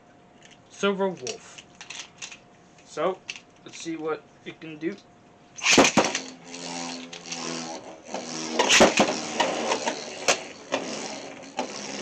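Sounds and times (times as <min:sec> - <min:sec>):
spinning tops clacking together: 0:05.6 - 0:12.0
spinning tops whirring: 0:05.6 - 0:12.0.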